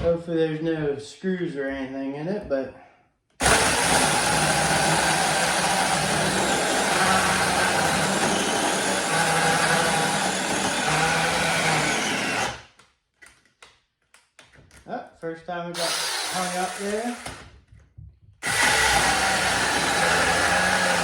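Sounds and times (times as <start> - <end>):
electric chainsaw cutting wood: 3.4 - 12.7, 15.8 - 17.4, 18.4 - 21.0.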